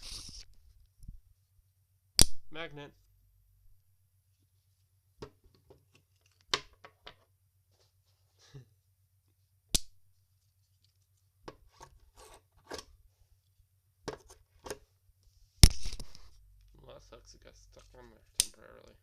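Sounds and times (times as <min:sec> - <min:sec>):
magnet scraping on metal: 0:11.6 - 0:12.9.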